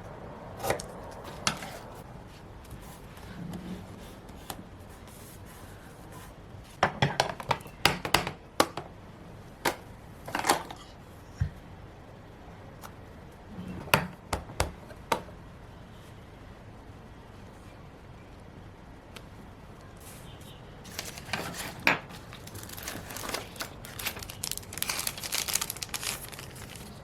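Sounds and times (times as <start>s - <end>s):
paper rustle: 20.8s - 27.0s.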